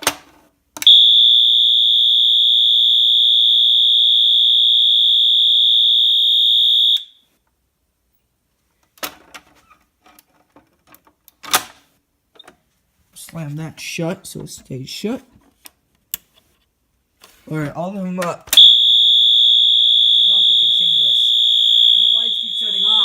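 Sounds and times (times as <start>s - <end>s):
high-pitched alarm tone: 18.6s - 23.0s.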